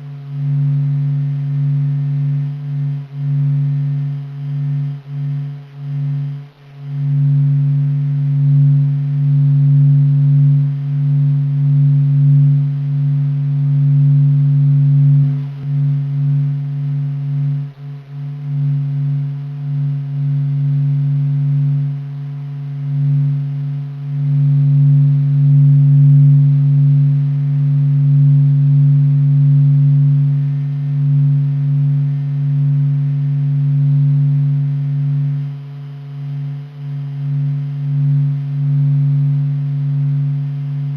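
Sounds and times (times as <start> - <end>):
steady low hum with overtones: 0.0 - 40.9.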